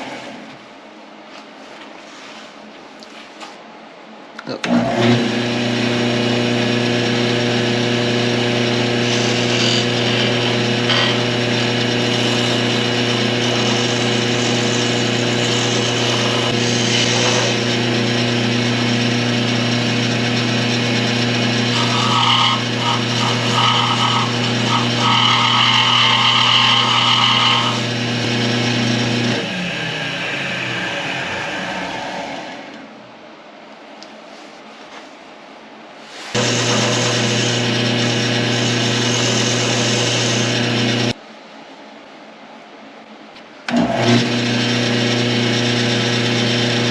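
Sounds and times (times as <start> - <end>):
lathe motor hum: 4.7 - 33.0, 36.3 - 41.2, 43.7 - 46.9
chisel cutting wood: 6.6 - 29.5, 36.4 - 41.1.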